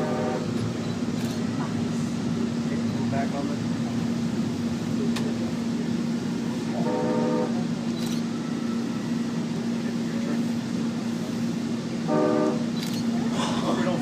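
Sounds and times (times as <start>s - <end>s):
train horn toot: 0.0s - 0.6s, 6.7s - 7.6s, 12.0s - 12.8s.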